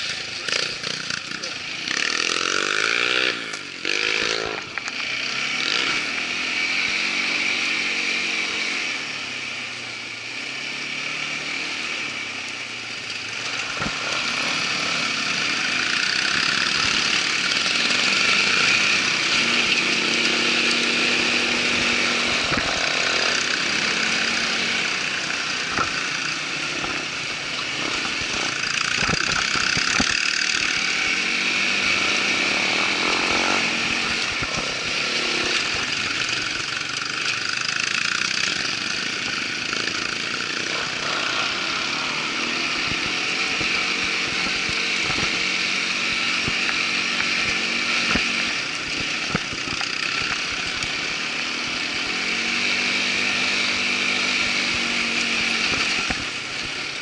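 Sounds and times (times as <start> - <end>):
quad bike engine running: 0.0 - 57.0.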